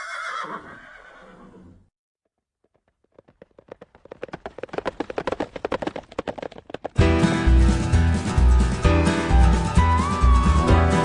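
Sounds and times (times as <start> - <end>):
horse hooves galloping: 2.3 - 7.9
loud music: 7.0 - 11.0.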